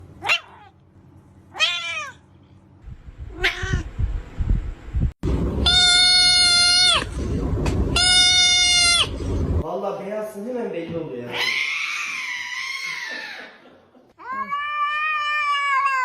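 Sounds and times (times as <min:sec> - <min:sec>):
cat meowing: 0:01.5 - 0:02.2, 0:03.3 - 0:03.9, 0:05.6 - 0:07.1, 0:07.9 - 0:09.1, 0:14.2 - 0:16.0.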